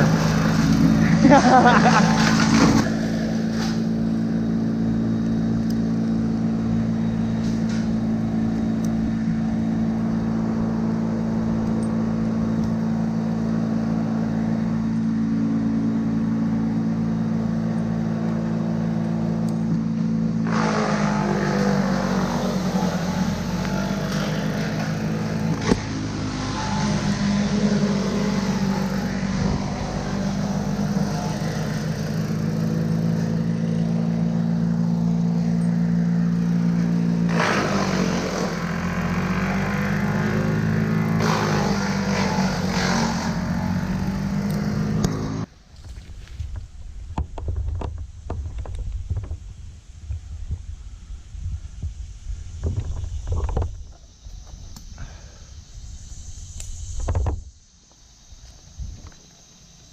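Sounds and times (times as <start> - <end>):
rough noisy sound: 0.0 - 50.7
engine running: 0.0 - 55.2
sharp crack: 20.4 - 32.4, 36.7 - 39.1.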